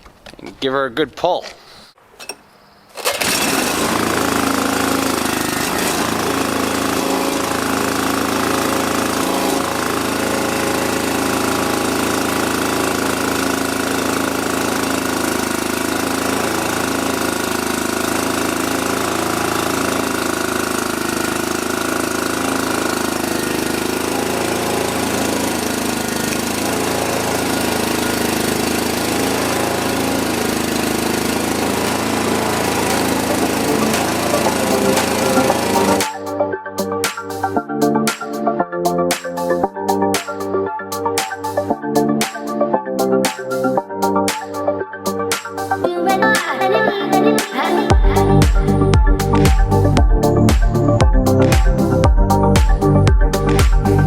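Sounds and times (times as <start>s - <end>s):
mower engine pull-start: 2.2s - 36.4s, 46.2s - 54.0s
mower engine running loudly: 3.0s - 38.2s, 47.9s - 54.0s.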